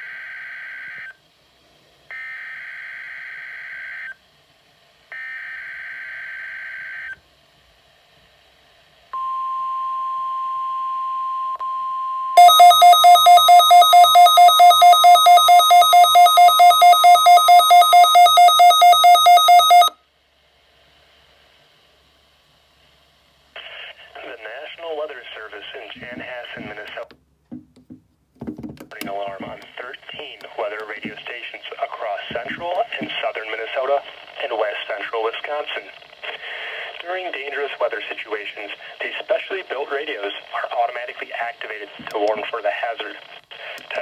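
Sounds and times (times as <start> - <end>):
radio alarm beeps: 9.2 - 20.0, 32.3 - 33.2
steady alert tone: 12.4 - 19.9.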